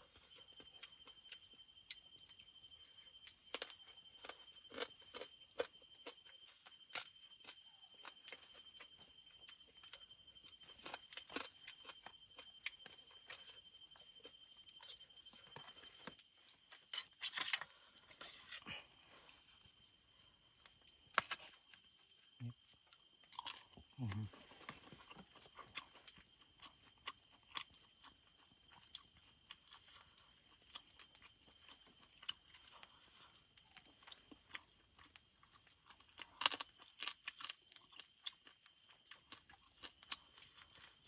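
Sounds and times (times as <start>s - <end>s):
person eating with crunches: 0.1s - 41.0s.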